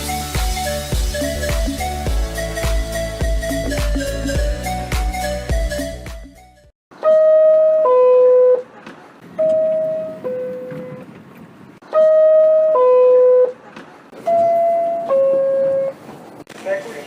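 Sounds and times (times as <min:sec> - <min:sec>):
subway door ding-dong chime: 0:07.0 - 0:08.6, 0:09.3 - 0:11.1, 0:11.9 - 0:13.6, 0:14.2 - 0:16.0.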